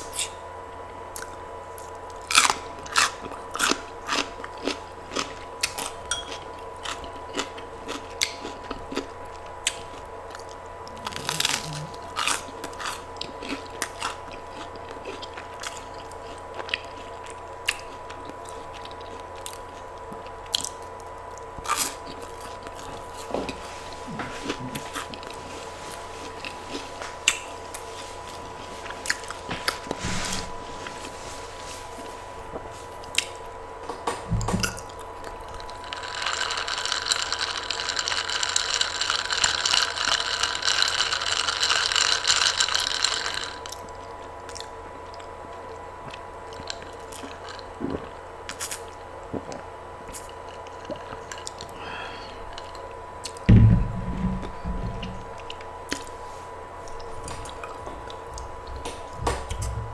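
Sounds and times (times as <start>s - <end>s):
crunchy eating and chewing: 0.0s - 33.8s, 34.6s - 59.9s
high electrical hum: 0.0s - 59.9s.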